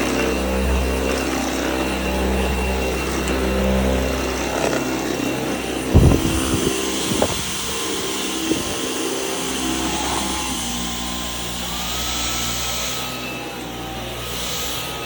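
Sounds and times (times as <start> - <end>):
stick vacuum running: 0.0 - 15.0.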